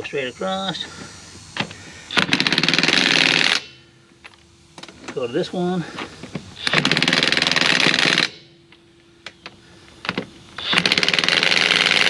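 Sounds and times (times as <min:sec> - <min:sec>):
impact wrench hammering: 0:02.1 - 0:03.8, 0:06.6 - 0:08.4, 0:10.1 - 0:12.0.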